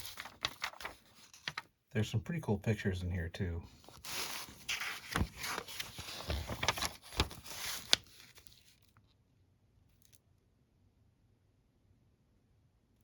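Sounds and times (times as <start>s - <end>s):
paper pages rustling: 0.0s - 1.7s, 3.7s - 9.0s.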